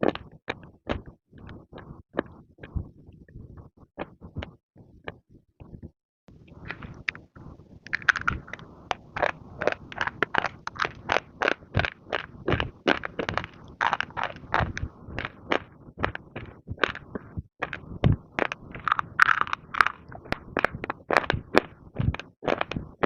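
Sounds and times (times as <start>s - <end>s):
dry crunches of chewing: 7.9s - 22.8s.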